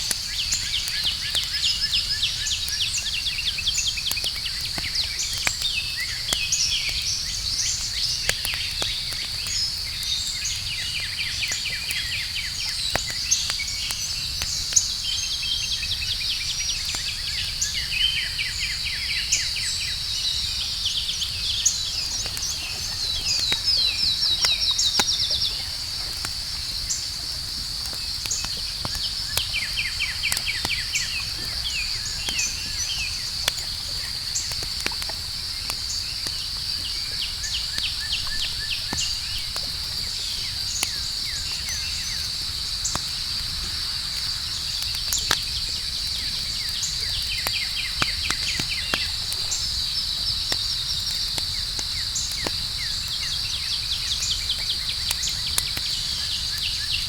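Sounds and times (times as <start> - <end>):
campfire crackling and popping: 0.0 - 57.0
night insects chorus: 0.0 - 57.0
chirping calls: 20.9 - 27.1.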